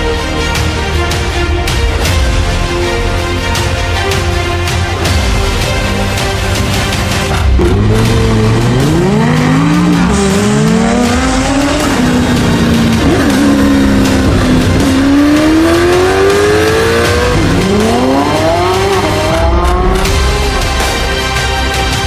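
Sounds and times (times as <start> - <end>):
sports car engine revving: 7.3 - 20.9.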